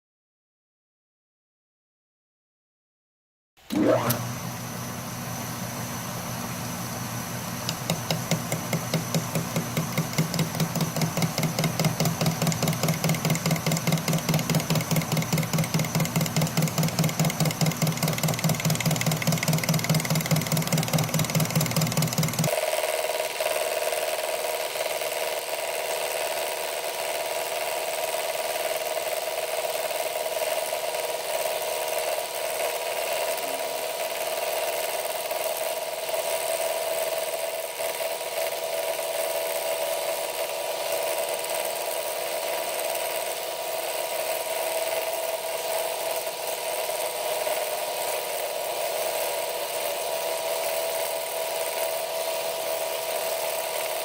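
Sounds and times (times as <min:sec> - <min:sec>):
power tool grinding metal: 0:06.5 - 0:22.5.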